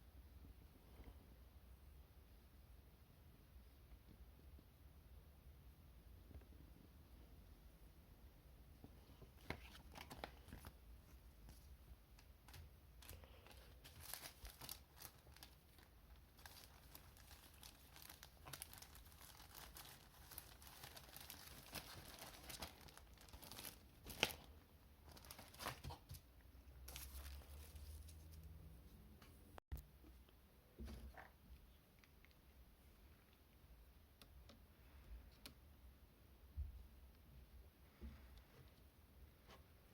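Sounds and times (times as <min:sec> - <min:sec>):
packaging crinkling and tearing: 0:12.5 - 0:26.2, 0:26.9 - 0:28.4.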